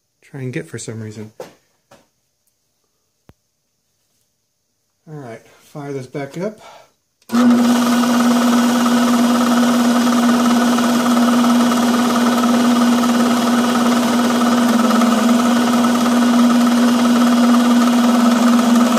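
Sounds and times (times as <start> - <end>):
electric machine motor hum: 7.3 - 18.9.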